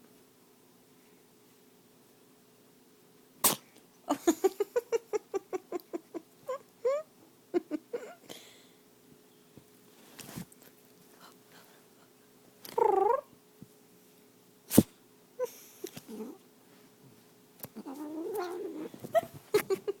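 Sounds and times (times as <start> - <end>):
cat sneezing: 3.4 - 3.7, 14.7 - 15.0.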